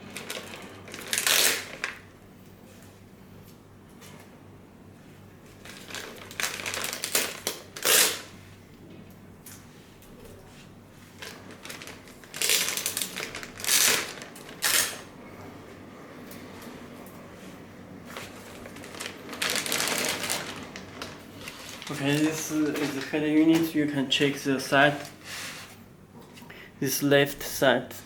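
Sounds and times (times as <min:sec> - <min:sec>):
packaging rustling and scraping: 0:05.6 - 0:08.2, 0:11.1 - 0:15.0, 0:18.0 - 0:23.8.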